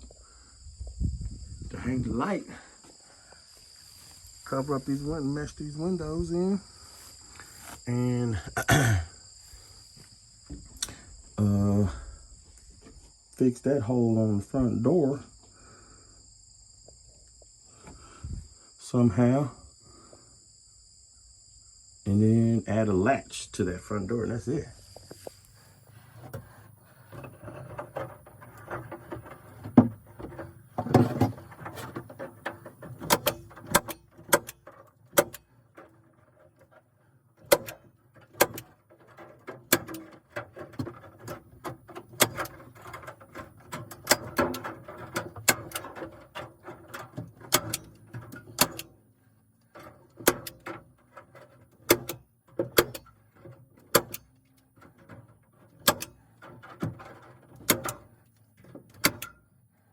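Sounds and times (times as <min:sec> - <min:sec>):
rustling handling noise: 0:24.8 - 0:59.3.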